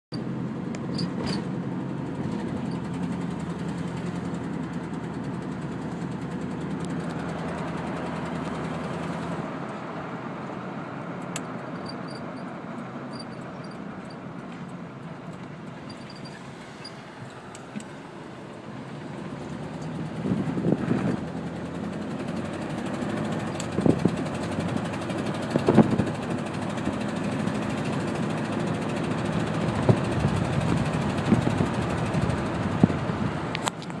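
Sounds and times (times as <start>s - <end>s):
engine idling unevenly: 1.7s - 9.4s
engine knocking: 19.0s - 33.0s.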